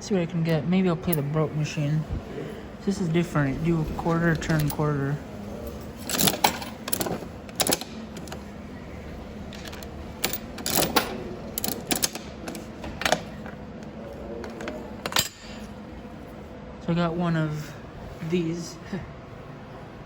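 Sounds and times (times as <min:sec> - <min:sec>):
coin dropping into vending machine: 0:06.0 - 0:08.4, 0:09.5 - 0:13.2.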